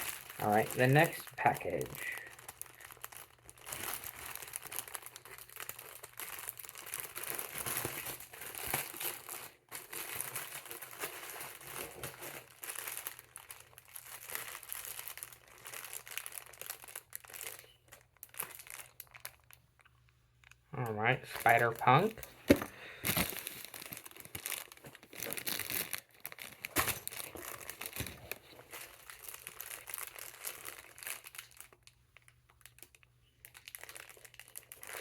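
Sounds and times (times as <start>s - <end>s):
packaging crinkling and tearing: 0.0s - 35.0s.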